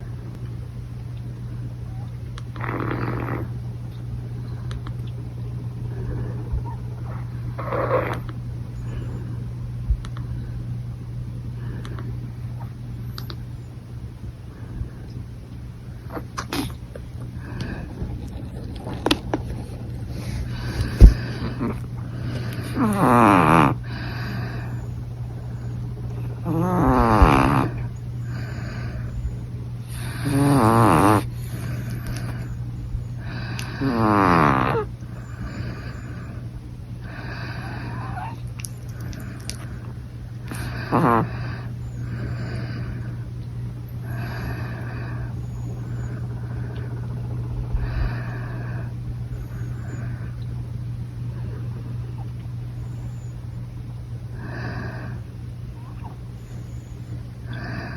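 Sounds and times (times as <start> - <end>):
steady low hum: 0.0 - 57.9
small dog snoring: 1.9 - 3.6, 6.0 - 9.2, 20.1 - 24.9, 26.4 - 29.2, 29.8 - 32.6, 33.2 - 36.4, 37.0 - 38.4, 40.4 - 43.0.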